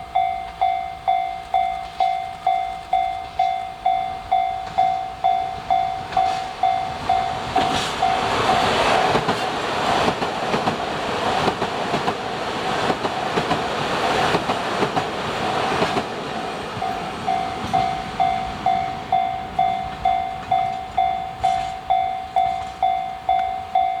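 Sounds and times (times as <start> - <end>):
level-crossing bell ringing: 0.0 - 8.7, 16.8 - 24.0
train passing: 0.0 - 24.0
wheels clicking over rail joints: 0.4 - 24.0.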